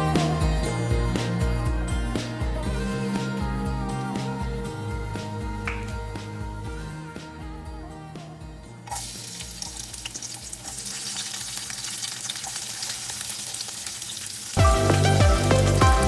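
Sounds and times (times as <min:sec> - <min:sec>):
background music: 0:00.0 - 0:11.7, 0:14.6 - 0:16.0
food sizzling in oil: 0:08.9 - 0:14.6.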